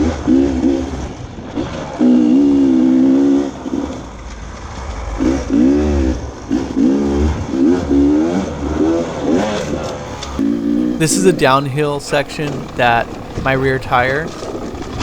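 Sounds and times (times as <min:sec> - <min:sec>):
dirt bike engine revving: 0:10.1 - 0:15.0.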